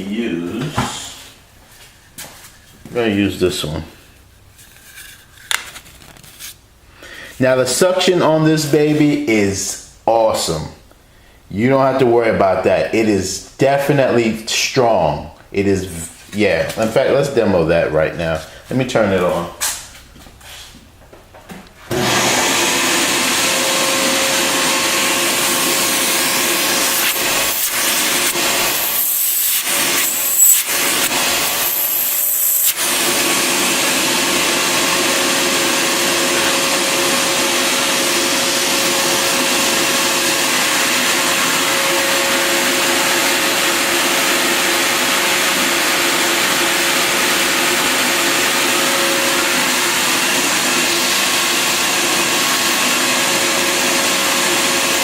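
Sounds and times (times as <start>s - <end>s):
shop vacuum running: 21.5s - 55.0s
high airflow whistle: 25.4s - 32.8s.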